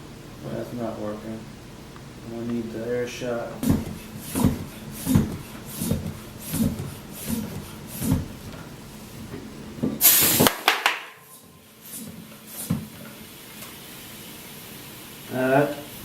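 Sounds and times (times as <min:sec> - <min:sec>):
floor pump strokes: 0:03.6 - 0:10.6, 0:11.2 - 0:13.8
blast of air into tire: 0:10.0 - 0:10.7.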